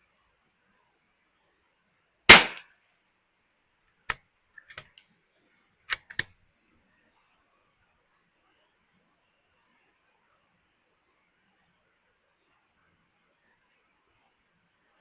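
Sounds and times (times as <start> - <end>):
rifle shot: 2.3 - 2.6.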